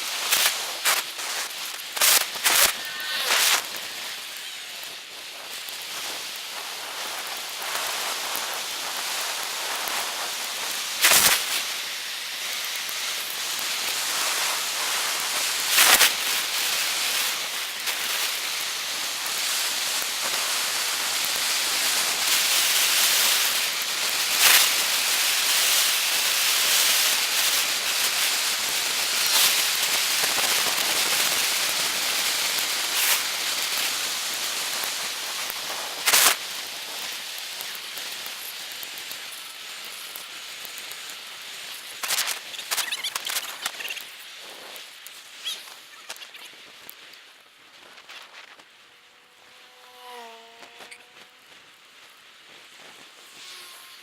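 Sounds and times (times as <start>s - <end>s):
steady rushing noise: 0.0s - 12.0s, 28.0s - 49.1s.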